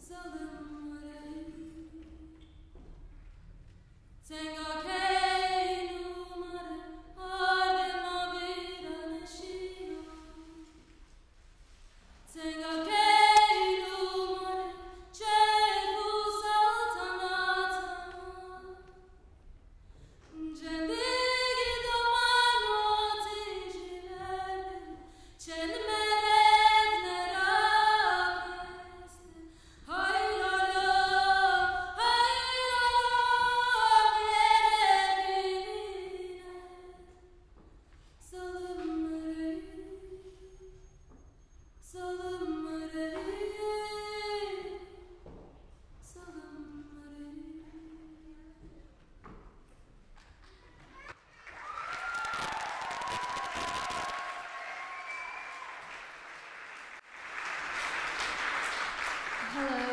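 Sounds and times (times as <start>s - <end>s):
woman singing unaccompanied: 0.0s - 2.4s, 4.2s - 10.8s, 12.3s - 18.9s, 20.3s - 37.1s, 38.2s - 40.5s, 41.8s - 45.0s, 46.0s - 48.8s, 59.4s - 59.9s.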